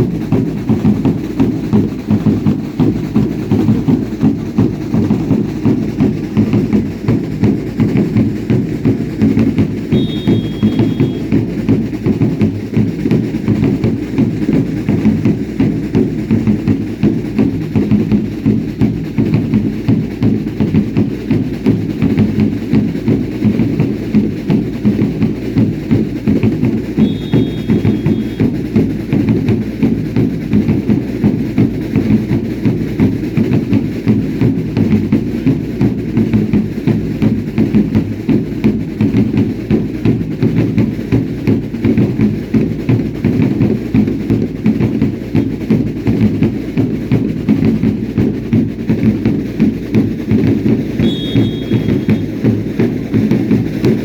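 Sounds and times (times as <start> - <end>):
dance drums beating: 0.0 - 54.0
short high whistle-like tone: 9.8 - 11.3, 27.0 - 28.5, 51.0 - 52.5.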